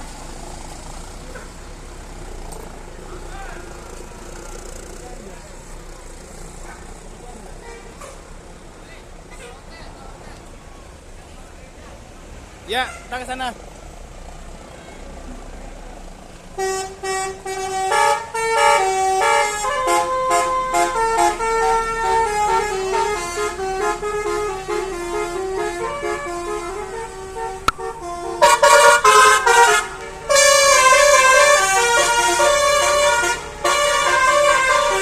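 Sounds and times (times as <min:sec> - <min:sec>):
musical bus horn melody: 0:16.6 - 0:35.0.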